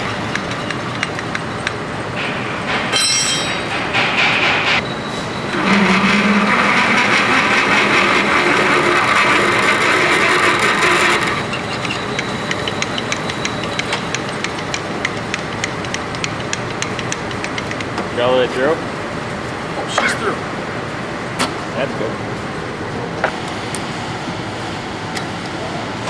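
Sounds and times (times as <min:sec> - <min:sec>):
machine tool cutting metal: 0:05.5 - 0:17.9
regular ticking: 0:10.8 - 0:18.0.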